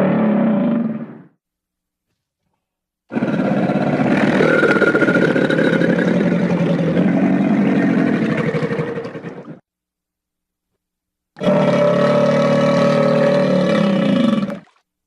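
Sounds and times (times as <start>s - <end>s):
rough rattling creature growl: 3.1s - 9.6s.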